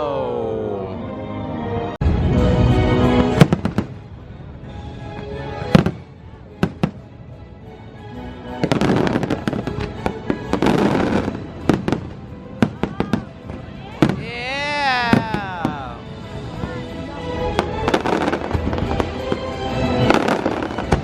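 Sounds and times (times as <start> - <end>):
music soundtrack: 0.0 - 21.0
firework bangs: 3.2 - 4.1, 5.7 - 7.1, 8.6 - 16.8, 17.6 - 21.0.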